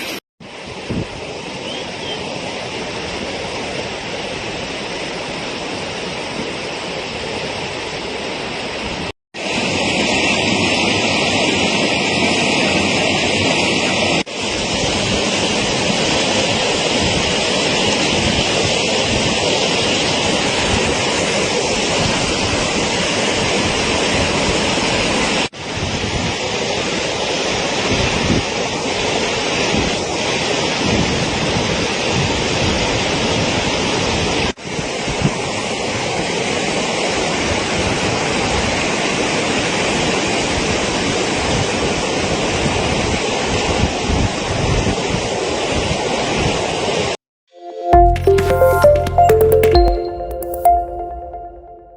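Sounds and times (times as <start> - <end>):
loud rush of water: 0.0 - 47.2.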